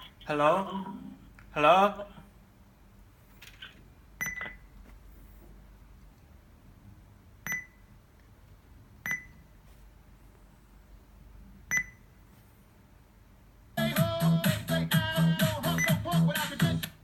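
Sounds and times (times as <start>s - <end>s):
faint low hum: 0.0s - 17.0s
electronic button beeps: 7.5s - 7.8s, 11.7s - 12.0s.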